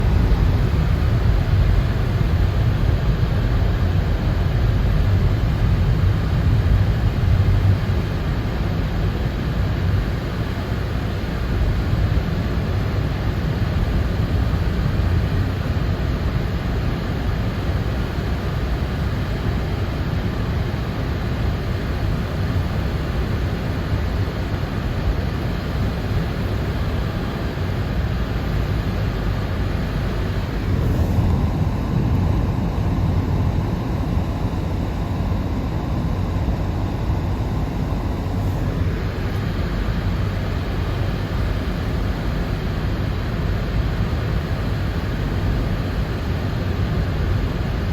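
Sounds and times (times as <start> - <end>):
road and engine rumble: 0.0 - 47.9
tyre and wind hiss: 25.0 - 37.2.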